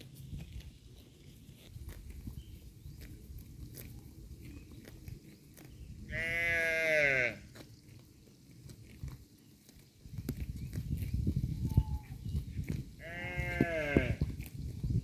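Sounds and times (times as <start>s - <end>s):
cows tearing and chewing grass: 0.0s - 15.0s
bleating call: 6.1s - 7.4s, 13.0s - 14.2s.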